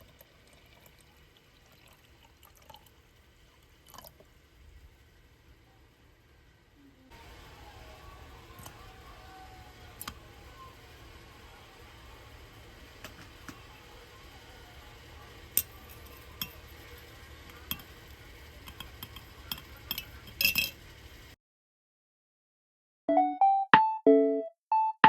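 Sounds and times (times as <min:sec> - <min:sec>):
clinks of small hard objects: 0:19.1 - 0:20.8.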